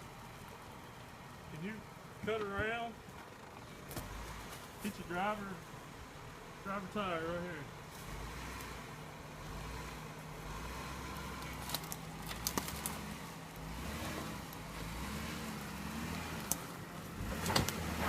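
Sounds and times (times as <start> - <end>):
car engine at low revs: 0.0 - 18.0
sharp clicks and cracks: 11.5 - 13.0, 16.1 - 16.7.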